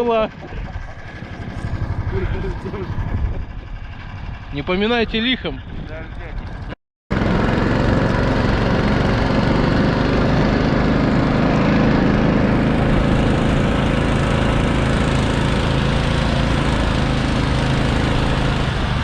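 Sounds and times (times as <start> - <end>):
small engine running: 0.0 - 19.0.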